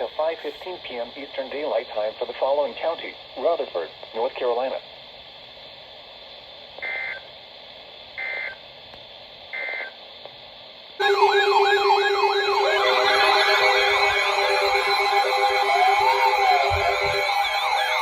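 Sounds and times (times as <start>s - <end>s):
radio hiss: 0.0s - 8.8s
shrill data bursts: 11.0s - 18.0s
steady low tone: 11.0s - 18.0s
warbling siren-like electronic tones: 11.0s - 18.0s.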